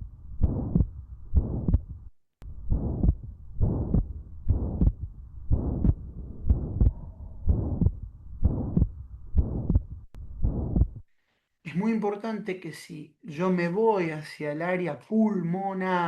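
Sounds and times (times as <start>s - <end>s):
heartbeat with harsh murmur: 0.0s - 11.1s.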